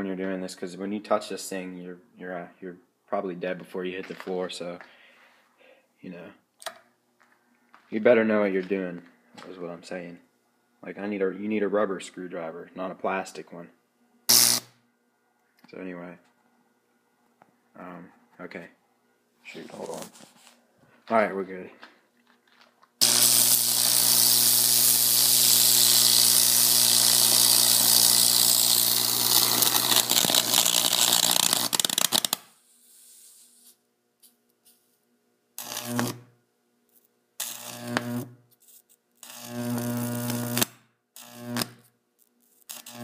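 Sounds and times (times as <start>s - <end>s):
electric arc buzzing crackle: 14.3s - 14.8s, 23.0s - 33.8s, 35.6s - 36.3s, 37.4s - 43.0s.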